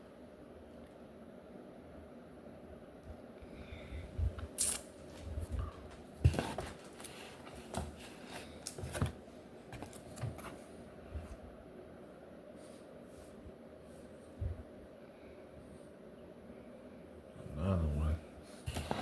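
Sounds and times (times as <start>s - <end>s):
paper and covers rustling: 18.6s - 19.0s.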